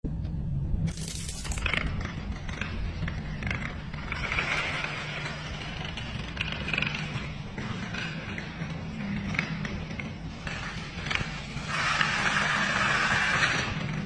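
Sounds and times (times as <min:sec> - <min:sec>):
dominoes toppling clatter: 0:00.9 - 0:08.5.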